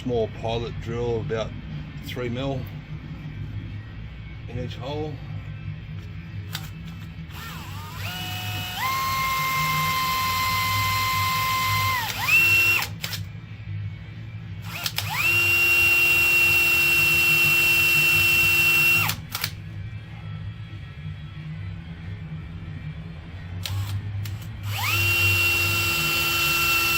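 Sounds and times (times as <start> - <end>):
electric drill whining: 7.3 - 13.2, 14.6 - 19.5, 23.6 - 26.9.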